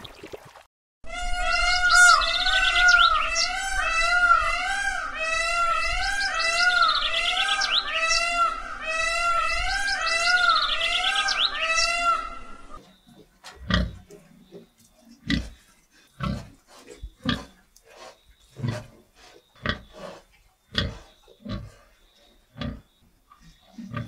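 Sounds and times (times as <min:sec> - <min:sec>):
animal grunting: 0:16.2 - 0:21.9, 0:23.7 - 0:24.0.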